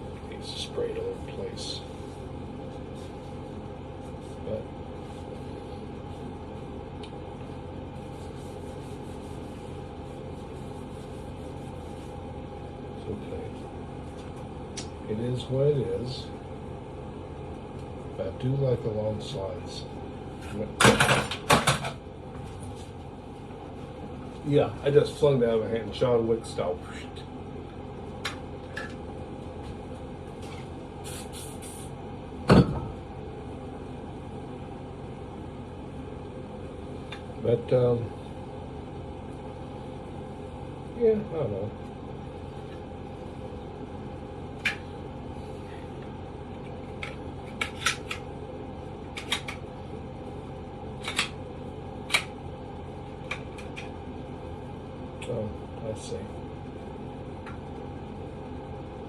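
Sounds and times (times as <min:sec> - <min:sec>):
steady low hum: 0:00.0 - 0:59.0
short hisses: 0:31.0 - 0:32.0.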